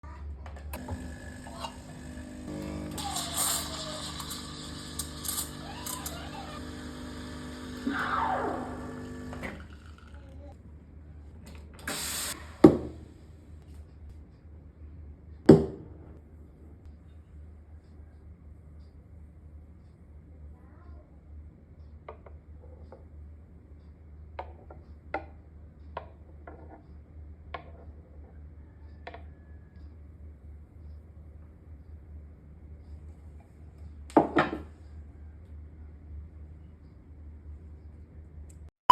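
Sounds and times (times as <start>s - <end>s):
espresso machine pump humming: 0.8s - 10.2s, 11.8s - 12.6s.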